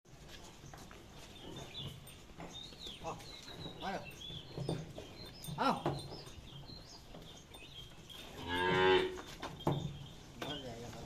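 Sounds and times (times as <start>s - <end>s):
cattle mooing: 8.4s - 9.2s.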